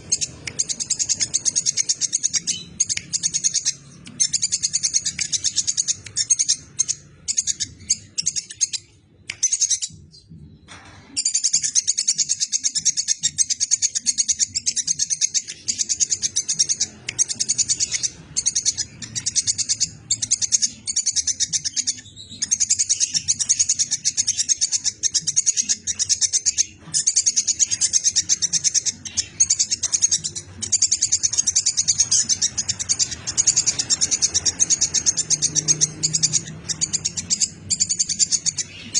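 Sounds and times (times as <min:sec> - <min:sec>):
squirrel chattering: 0:00.0 - 0:10.2, 0:11.2 - 0:38.9.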